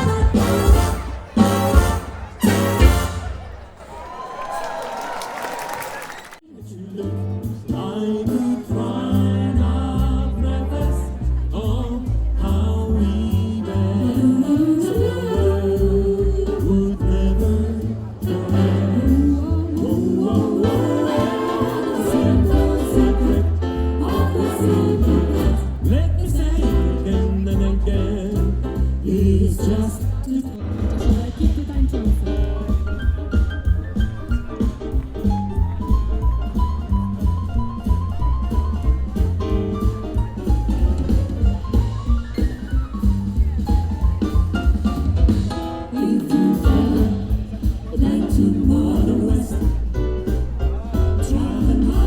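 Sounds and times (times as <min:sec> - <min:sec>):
strong bass line: 0:00.0 - 0:03.6, 0:08.7 - 0:45.6, 0:46.6 - 0:52.0
instrumental accompaniment: 0:00.0 - 0:03.8, 0:13.3 - 0:29.3
voices singing together: 0:06.5 - 0:26.5, 0:45.8 - 0:52.0.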